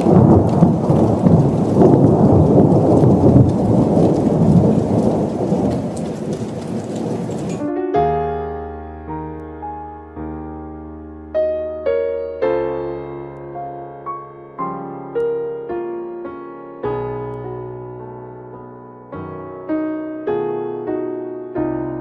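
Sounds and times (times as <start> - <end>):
heavy rain: 0.0 - 7.7
rolling thunder: 0.0 - 7.7
piano notes: 0.0 - 22.0.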